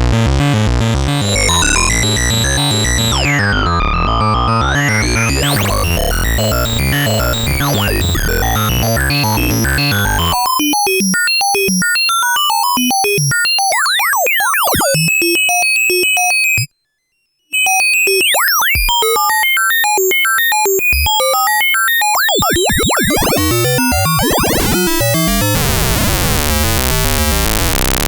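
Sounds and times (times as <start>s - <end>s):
synthesizer fast note run: 0.0s - 10.4s, 23.1s - 28.0s.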